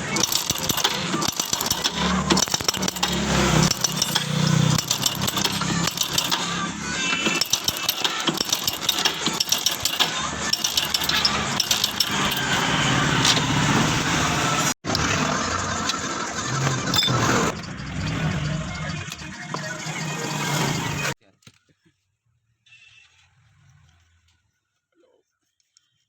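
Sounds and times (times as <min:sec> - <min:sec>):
timing chain rattle: 0:00.0 - 0:13.7, 0:16.8 - 0:20.6
motorcycle engine running: 0:00.0 - 0:21.2.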